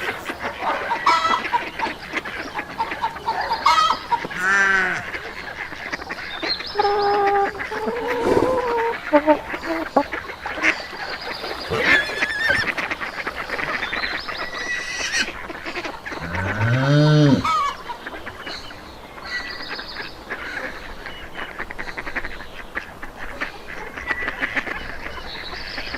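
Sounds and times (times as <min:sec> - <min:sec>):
poultry flock chattering: 0:00.0 - 0:25.9
low drawn-out bird call: 0:03.3 - 0:18.0.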